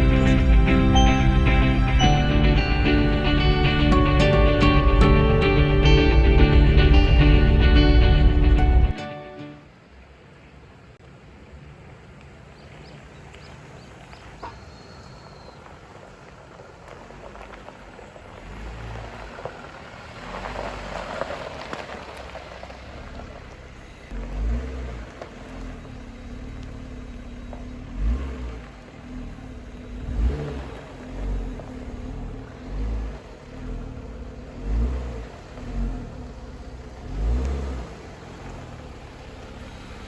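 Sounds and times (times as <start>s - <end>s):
low thumps: 0.0s - 9.0s
car engine running: 0.0s - 9.1s, 14.4s - 40.0s.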